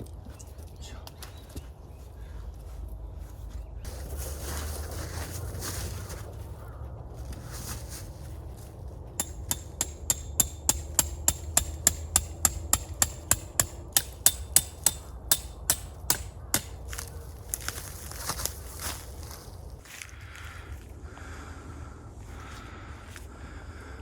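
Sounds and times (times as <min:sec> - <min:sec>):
hammer striking metal stake: 0:09.2 - 0:17.1.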